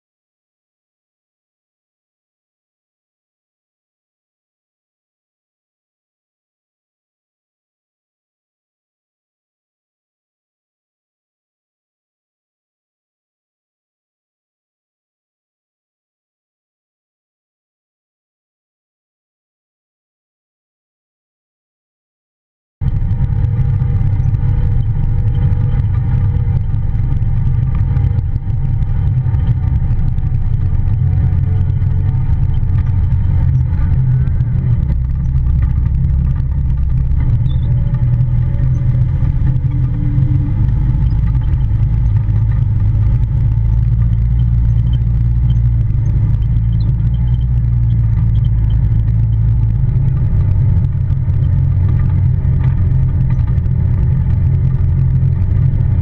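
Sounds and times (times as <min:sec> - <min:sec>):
vehicle engine rumbling: 0:22.8 - 0:56.0.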